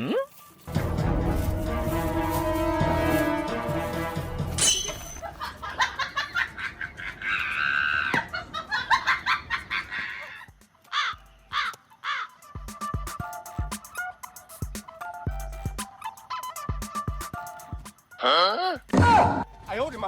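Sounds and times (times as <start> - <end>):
music: 0.3 - 5.3, 10.5 - 20.0
bird-like calls: 9.9 - 18.1.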